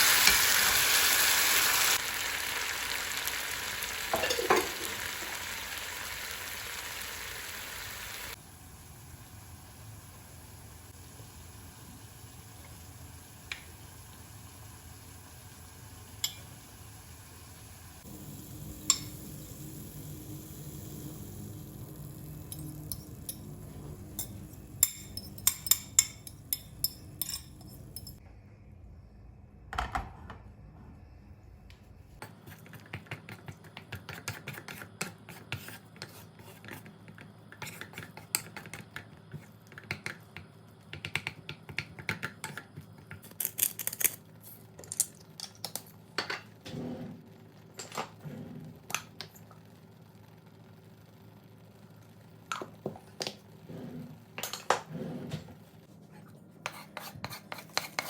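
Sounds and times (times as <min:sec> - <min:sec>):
kitchen utensils and dishes clinking: 0:04.1 - 0:05.2, 0:22.3 - 0:28.2, 0:54.0 - 0:55.5
low steady hum: 0:08.4 - 0:32.2.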